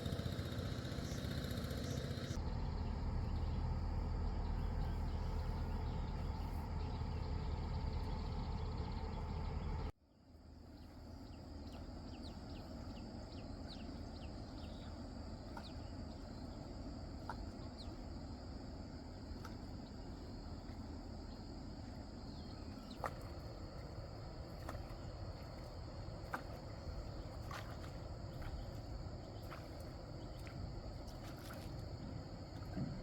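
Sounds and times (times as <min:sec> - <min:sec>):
small engine humming: 0:00.0 - 0:09.9
outdoor ambience: 0:00.0 - 0:33.0.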